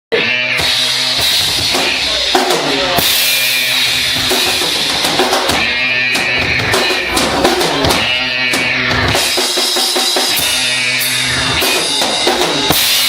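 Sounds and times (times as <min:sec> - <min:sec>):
live band playing: 0:00.1 - 0:13.0
drum kit kick and snare: 0:00.6 - 0:13.0.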